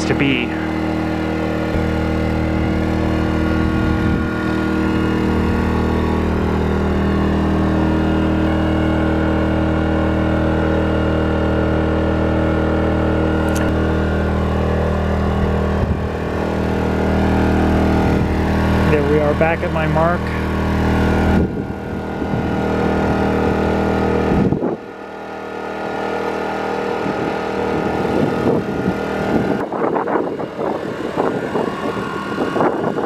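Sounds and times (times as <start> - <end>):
generator engine droning: 0.0 - 33.0
brief click: 13.5 - 13.7.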